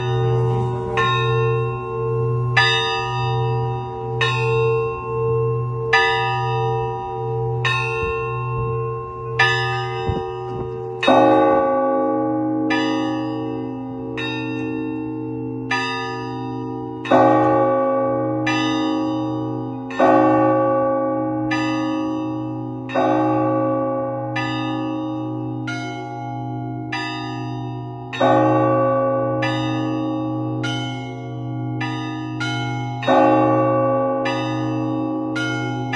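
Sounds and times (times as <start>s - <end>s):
low hum of large bell: 0.0s - 35.9s
lower-pitched bells: 0.0s - 35.9s
small church bells striking: 0.0s - 35.9s.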